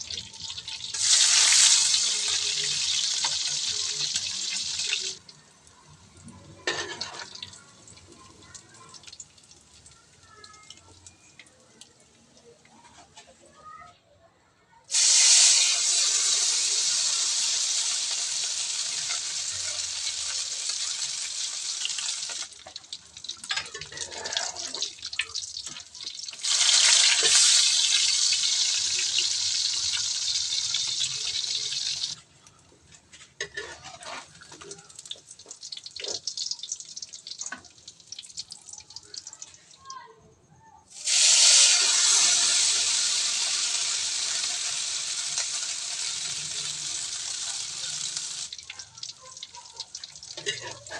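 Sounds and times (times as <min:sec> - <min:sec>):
oil spitting and crackling: 0:00.0 - 0:05.3, 0:14.9 - 0:39.7, 0:40.9 - 0:50.9
batter sizzling in hot oil: 0:00.0 - 0:05.9, 0:14.9 - 0:32.3, 0:33.4 - 0:40.0, 0:40.9 - 0:50.9.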